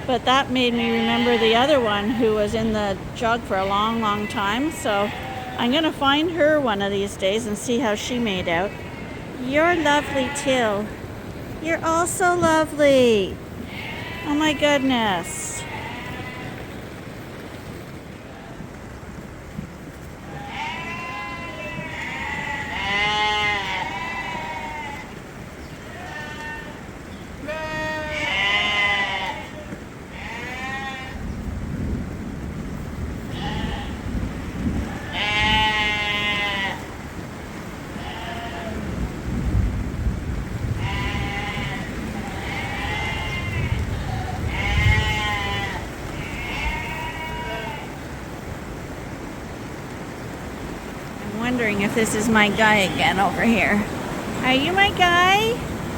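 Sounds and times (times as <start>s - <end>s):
low rumbling background noise: 0.0s - 55.9s
sheep bleating: 0.6s - 2.6s, 3.8s - 5.9s, 8.0s - 10.9s, 13.7s - 16.8s, 20.3s - 25.2s, 25.8s - 31.2s, 33.3s - 34.1s, 34.8s - 36.9s, 37.9s - 38.9s, 40.8s - 48.1s.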